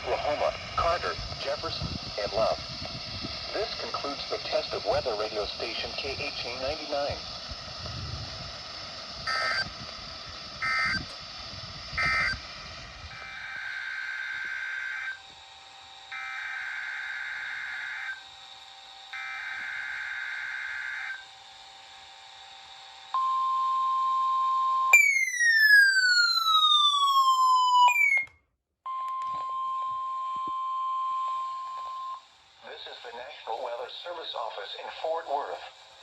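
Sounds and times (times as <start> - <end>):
warbling digital data bursts: 9.2 - 9.7
steady warning alarm tone: 9.2 - 9.8, 10.6 - 11.1, 12.0 - 15.4, 16.0 - 18.4, 19.0 - 21.3, 23.2 - 28.3, 28.9 - 32.2
loud falling whistle: 23.2 - 28.3.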